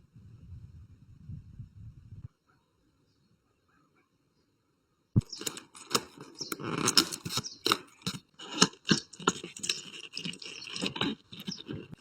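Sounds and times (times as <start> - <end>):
packaging crinkling and rustling: 5.2 - 12.0.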